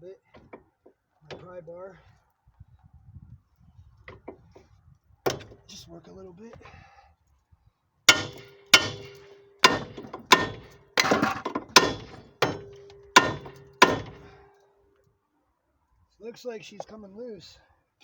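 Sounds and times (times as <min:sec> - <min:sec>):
hammer striking steel: 0:08.1 - 0:14.5.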